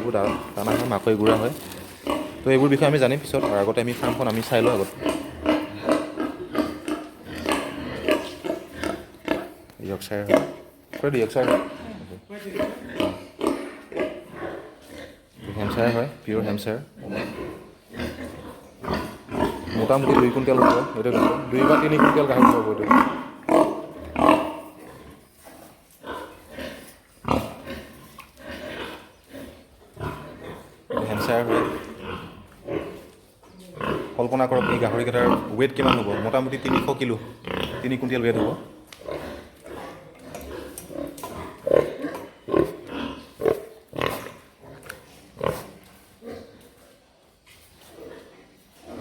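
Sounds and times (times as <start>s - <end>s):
pigs grunting: 0.0s - 47.0s.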